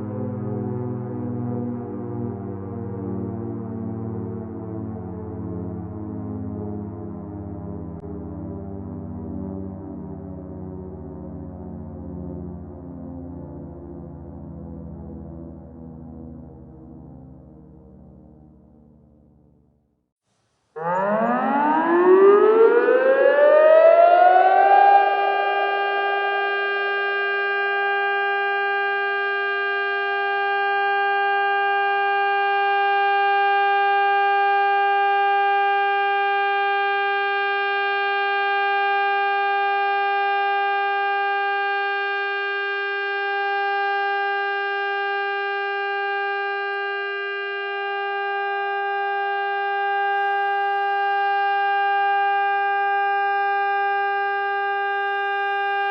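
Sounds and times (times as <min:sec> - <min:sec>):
warning siren winding up: 0:20.8 - 0:42.0.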